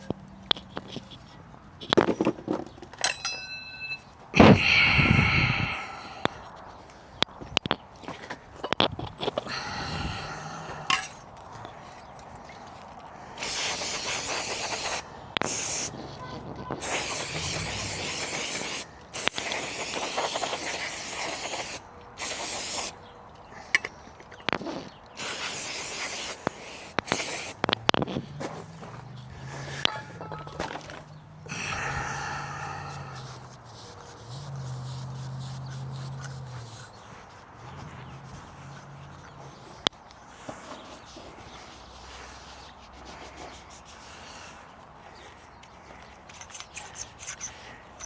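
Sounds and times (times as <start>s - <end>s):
spray hissing: 13.4s - 16.0s, 16.8s - 23.0s, 25.2s - 27.8s.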